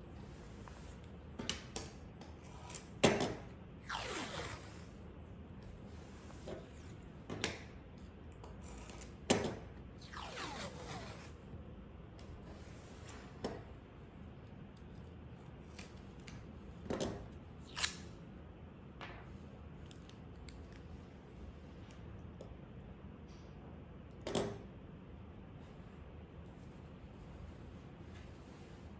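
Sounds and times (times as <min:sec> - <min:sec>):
tape peeling and rustling: 0:00.2 - 0:05.0, 0:08.4 - 0:09.3, 0:10.0 - 0:11.4, 0:14.8 - 0:16.5.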